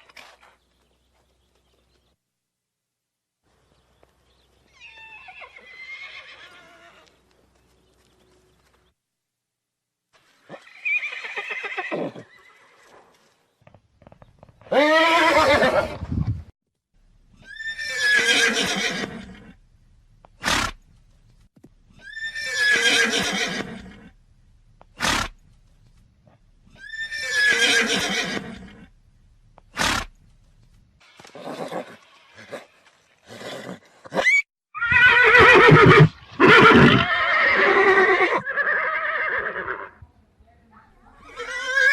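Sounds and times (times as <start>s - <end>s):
horses neighing: 4.7s - 7.2s, 10.4s - 13.0s, 14.6s - 16.0s, 17.4s - 19.5s, 22.0s - 24.1s, 31.2s - 40.0s, 41.2s - 41.9s.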